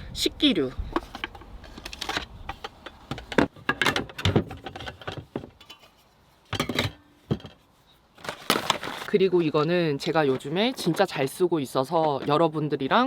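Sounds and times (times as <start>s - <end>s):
rustling: 5.6s - 11.2s.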